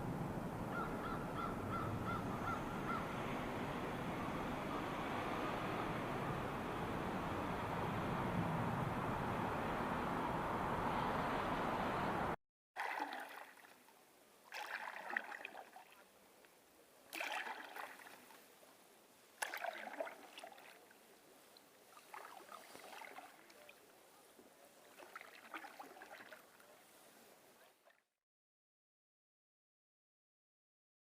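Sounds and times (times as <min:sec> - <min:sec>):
water splashing and sloshing: 0:12.8 - 0:16.2, 0:17.1 - 0:28.0.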